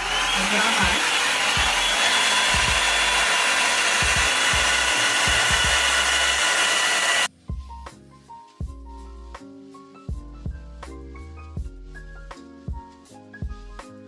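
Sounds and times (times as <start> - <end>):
hair dryer running: 0.0 - 7.3
background music with a beat: 3.9 - 6.1, 7.3 - 14.0.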